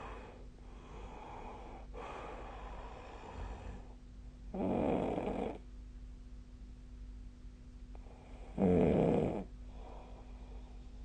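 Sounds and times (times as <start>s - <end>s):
person breathing noisily: 0.0s - 4.0s, 9.7s - 11.0s
loud snore: 4.5s - 5.6s, 8.5s - 9.5s.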